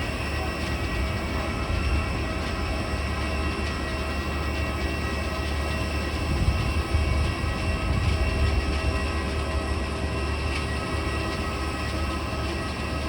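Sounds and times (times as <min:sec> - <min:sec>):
jet engines running: 0:00.0 - 0:13.0.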